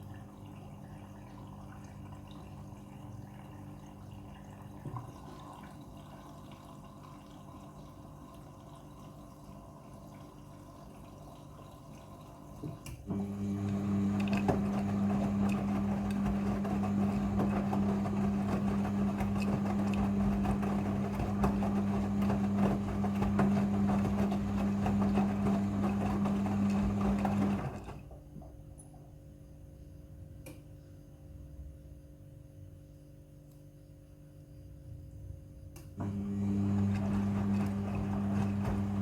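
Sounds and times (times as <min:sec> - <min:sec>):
washing machine running: 0:00.0 - 0:28.4, 0:36.0 - 0:39.0.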